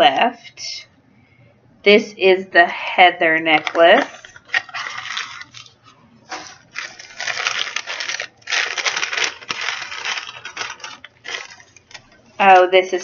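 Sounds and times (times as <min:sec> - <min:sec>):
wrapping paper rustling and crinkling: 0:03.5 - 0:12.6.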